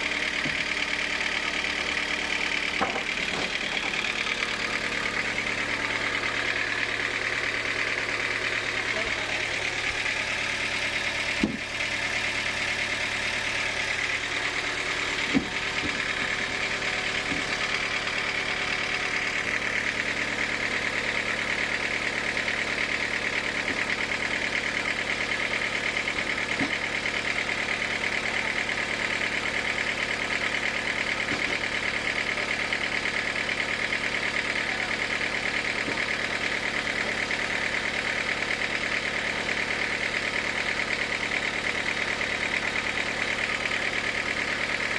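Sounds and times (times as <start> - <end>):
sawmill motor hum: 0.0 - 44.9
sharp knocks: 11.3 - 11.7, 15.3 - 16.0.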